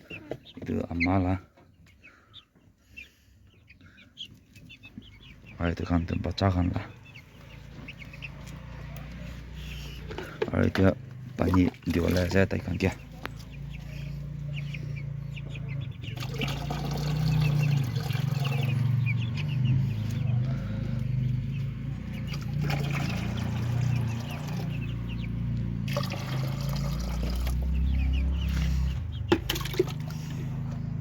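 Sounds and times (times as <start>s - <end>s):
chicks peeping: 0.0s - 31.0s.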